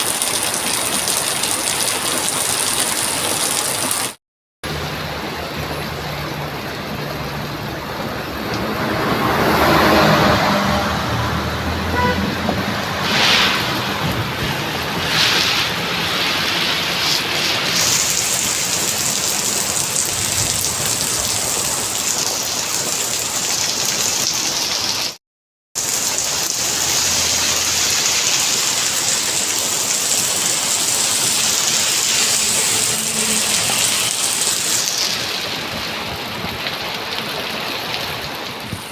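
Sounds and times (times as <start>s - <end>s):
rain falling on a road: 0.0s - 10.5s, 12.0s - 25.2s, 25.8s - 38.9s
vehicle passing: 5.0s - 22.2s, 30.5s - 35.7s.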